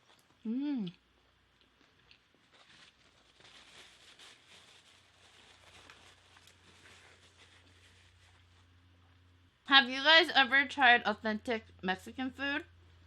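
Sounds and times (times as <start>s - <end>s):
faint chewing: 0.0s - 3.5s, 5.2s - 9.4s
low steady hum: 0.0s - 13.0s.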